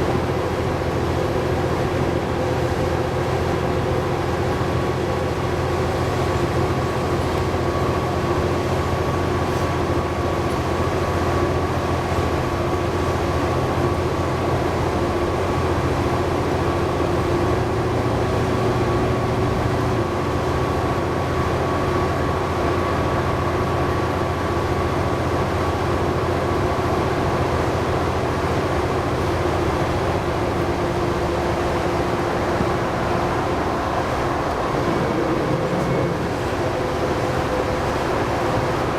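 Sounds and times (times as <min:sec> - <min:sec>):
bus engine drone: 0:00.0 - 0:38.9
road noise: 0:00.0 - 0:38.9
thin steady whine: 0:20.0 - 0:38.9.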